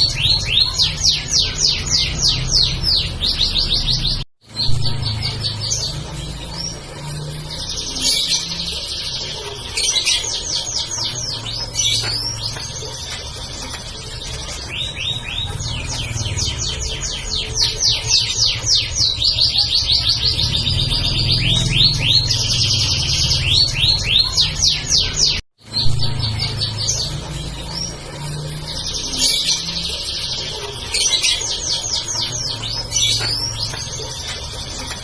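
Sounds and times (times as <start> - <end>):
canary singing trills: 0.0 - 35.0.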